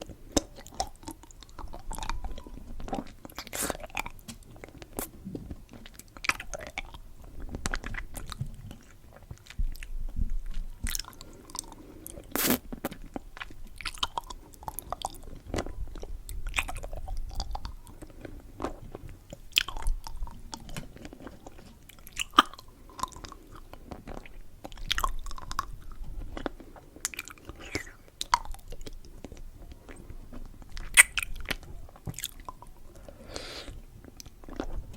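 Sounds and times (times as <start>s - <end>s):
chewing candy crunches: 0.0s - 34.9s
wet mouth clicks: 10.8s - 15.2s, 27.0s - 29.4s, 30.6s - 34.6s.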